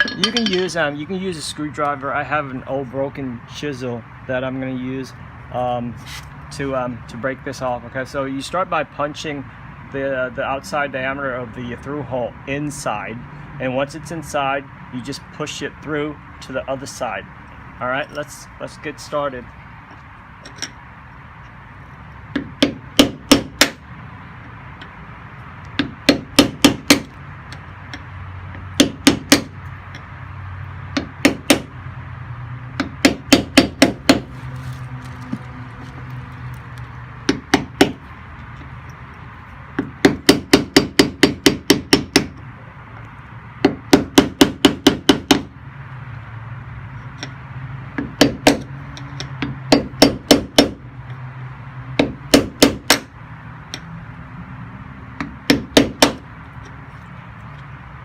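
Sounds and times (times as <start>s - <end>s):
hammer striking chisel on metal: 0.0s - 0.8s, 22.3s - 23.8s, 39.8s - 42.4s, 48.0s - 50.8s, 52.0s - 53.1s, 55.2s - 56.2s.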